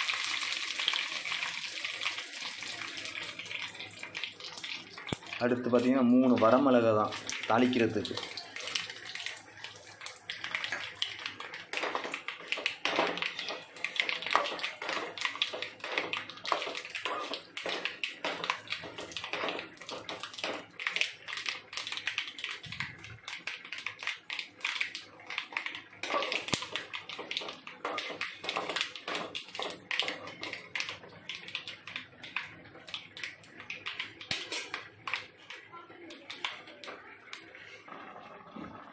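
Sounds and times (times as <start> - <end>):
hot oil sizzling: 0.0 - 35.6
sharp crackles and pops: 7.1 - 37.5.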